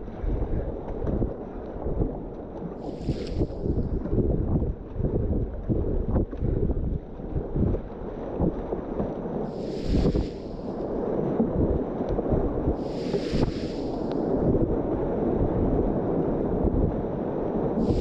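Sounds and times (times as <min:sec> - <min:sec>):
brief splashing hisses: 0:02.9 - 0:03.6, 0:09.5 - 0:10.7, 0:12.8 - 0:14.2
whitewater rushing: 0:12.8 - 0:14.0.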